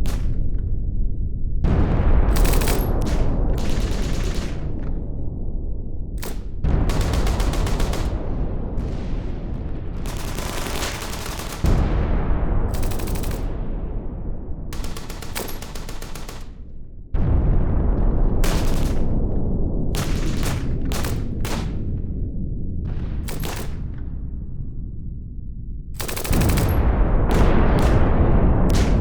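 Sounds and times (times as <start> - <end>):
deep rumble: 0.0 - 29.0
heavy explosion blasts: 1.6 - 15.8, 16.6 - 24.6, 26.1 - 29.0
machine-gun fire: 2.2 - 4.9, 6.2 - 13.7, 14.8 - 16.7, 18.3 - 19.2, 20.0 - 21.8, 23.2 - 23.9, 26.0 - 29.0.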